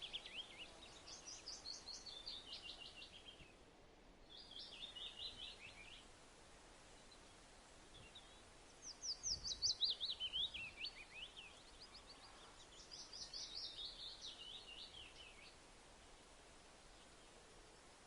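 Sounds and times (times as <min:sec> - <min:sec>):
bird singing trills: 0:00.0 - 0:03.4, 0:07.9 - 0:15.5.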